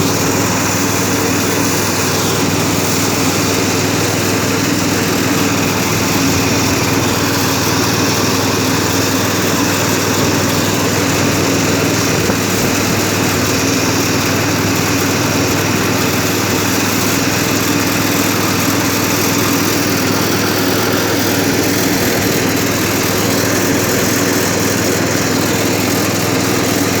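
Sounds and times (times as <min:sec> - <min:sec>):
threshing machine engine running: 0:00.0 - 0:27.0.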